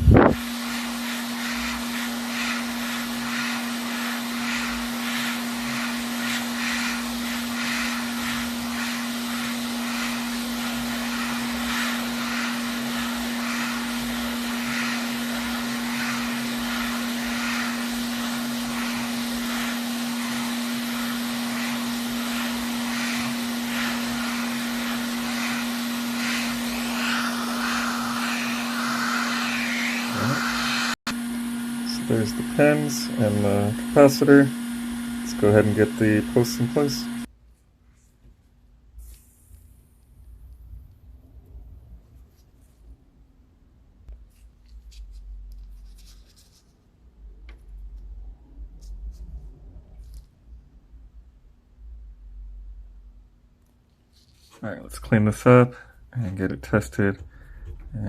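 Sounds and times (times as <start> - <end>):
fan-like blowing noise: 0.0 - 37.3.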